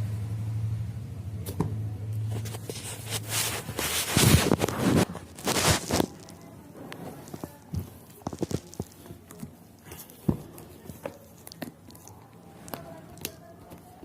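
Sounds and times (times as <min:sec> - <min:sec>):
package being opened: 0:02.4 - 0:06.5.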